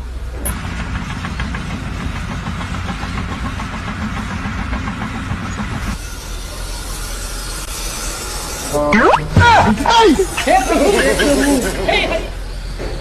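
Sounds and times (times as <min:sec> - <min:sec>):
engine running with clatter: 0:00.0 - 0:06.7.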